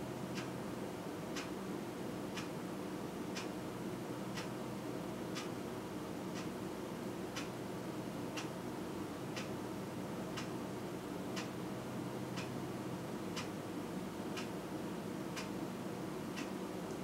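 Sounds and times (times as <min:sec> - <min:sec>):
clock ticking: 0:04.3 - 0:04.5.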